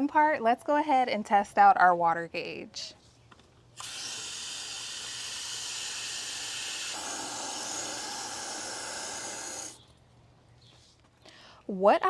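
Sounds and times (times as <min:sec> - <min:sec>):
water pouring into a planter: 0:03.8 - 0:09.8.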